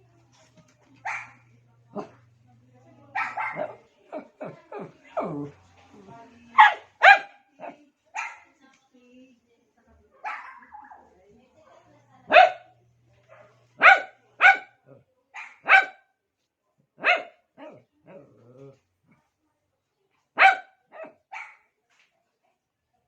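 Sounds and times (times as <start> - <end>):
small dog barking: 1.0 - 2.2, 3.1 - 5.5, 6.5 - 8.5, 10.2 - 11.0, 12.3 - 12.7, 13.3 - 16.1, 17.0 - 18.2, 20.4 - 21.7.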